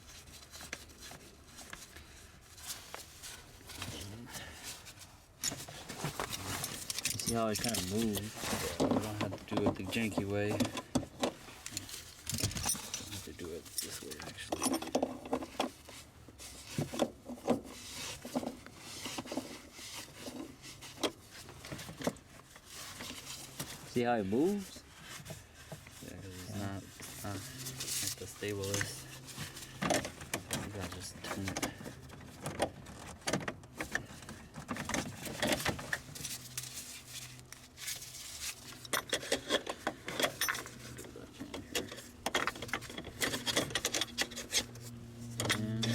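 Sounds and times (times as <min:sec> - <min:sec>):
metal bracket clicks and scrapes: 0:05.4 - 0:15.8, 0:34.8 - 0:45.9.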